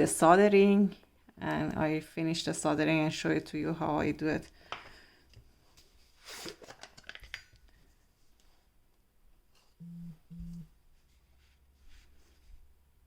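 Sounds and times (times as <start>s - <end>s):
low electronic beeps: 9.8s - 10.7s.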